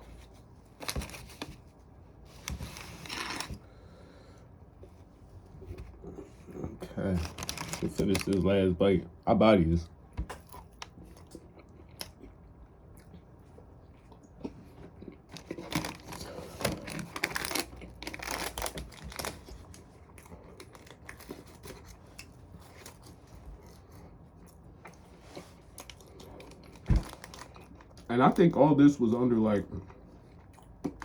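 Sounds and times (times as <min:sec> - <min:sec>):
paper tearing and crinkling: 0:02.4 - 0:03.6, 0:07.1 - 0:08.4, 0:15.6 - 0:19.5.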